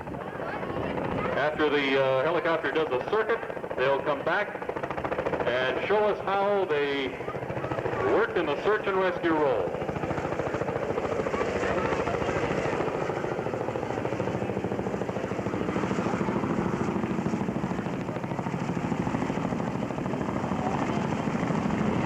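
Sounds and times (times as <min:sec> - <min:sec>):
helicopter rotors beating: 0:00.0 - 0:22.0.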